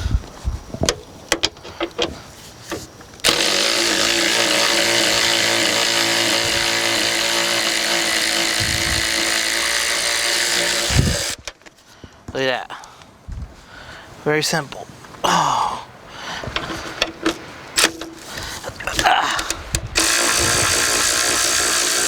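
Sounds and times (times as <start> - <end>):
power tool motor running: 3.2 - 11.4, 20.0 - 22.0.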